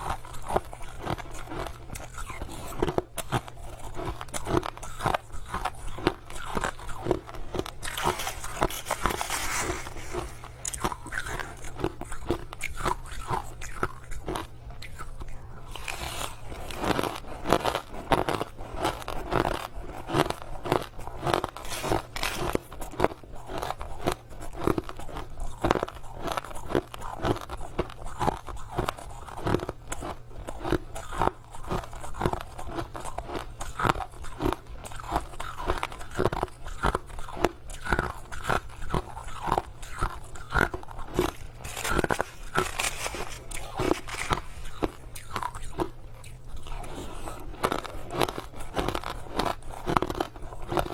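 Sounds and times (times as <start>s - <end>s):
crushed ice crunching: 3.8s - 14.4s, 20.1s - 23.8s, 38.9s - 45.9s.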